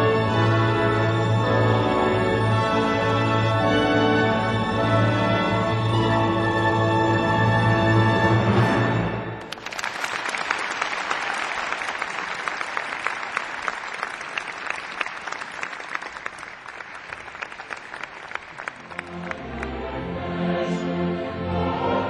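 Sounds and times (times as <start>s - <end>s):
choir and string orchestra: 0.0s - 9.4s, 18.8s - 22.0s
audience applauding: 9.4s - 19.8s.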